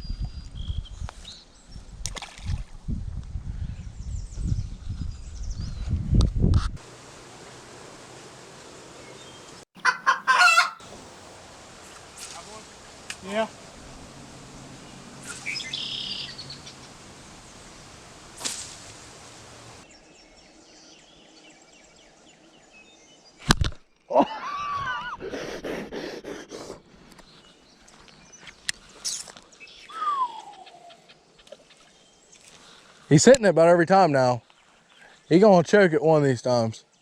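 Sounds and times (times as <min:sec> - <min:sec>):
birds chirping: 0:06.8 - 0:23.4, 0:27.1 - 0:33.3.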